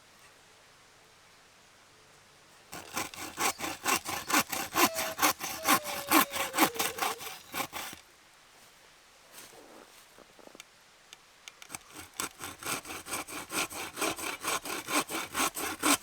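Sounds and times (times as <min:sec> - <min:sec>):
hand saw cutting wood: 0:02.7 - 0:08.0, 0:11.6 - 0:16.0.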